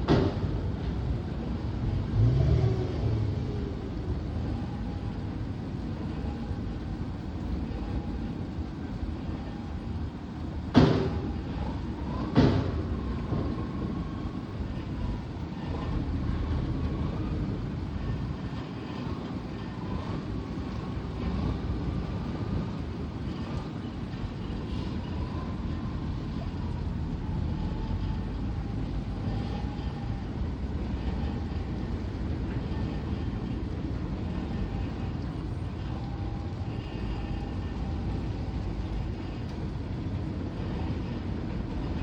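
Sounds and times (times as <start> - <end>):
tugboat engine rumbling: 0.0 - 42.0
faint wavering whine: 13.5 - 41.3.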